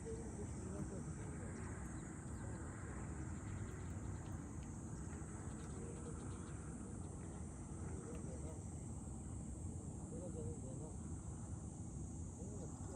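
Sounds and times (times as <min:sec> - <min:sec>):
high-pitched insect chorus: 0:00.0 - 0:12.9.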